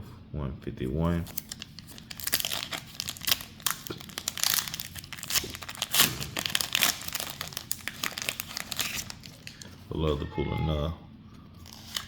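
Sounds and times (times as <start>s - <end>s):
foil wrapper crinkling: 1.3s - 9.8s, 11.6s - 12.0s.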